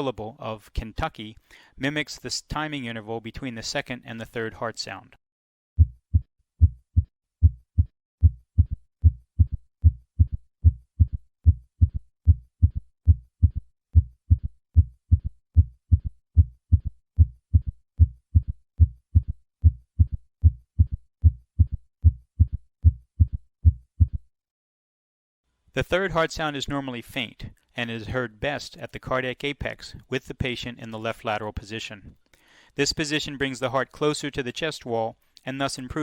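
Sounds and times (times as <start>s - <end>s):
heartbeat galloping rhythm: 5.8s - 24.3s.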